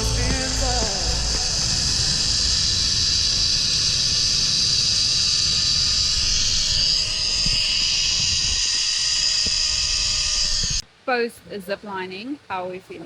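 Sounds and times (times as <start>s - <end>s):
zipline trolley whirring on cable: 0.9s - 10.8s.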